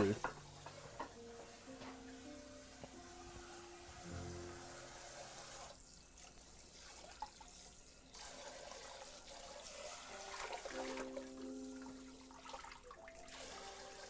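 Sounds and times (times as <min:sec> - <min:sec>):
tap water running into sink: 0:00.0 - 0:14.0.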